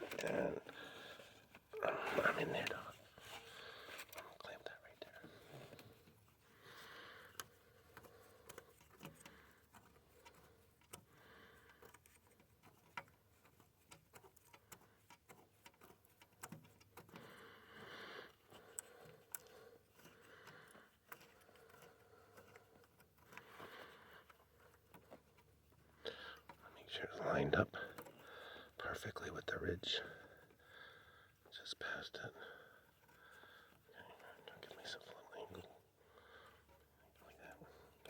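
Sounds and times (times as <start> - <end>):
faint clicks of hose clamp: 18.3 - 25.5.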